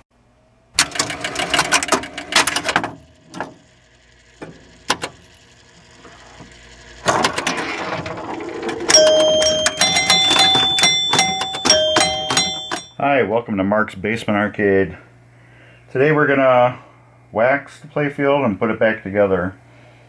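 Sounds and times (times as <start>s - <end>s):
pinball machine clacking: 0.8s - 5.4s, 7.0s - 13.0s.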